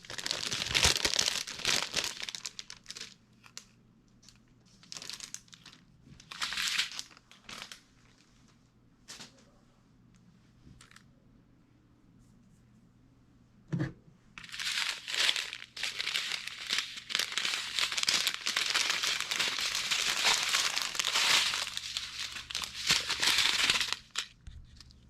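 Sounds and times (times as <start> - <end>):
plastic bags crinkling: 0.0 - 3.7, 4.3 - 8.2, 14.4 - 25.0.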